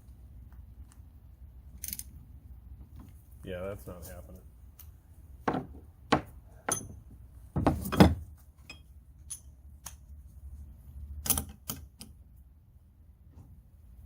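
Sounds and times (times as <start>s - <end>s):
metal hand tools clinking: 8.7s - 10.0s.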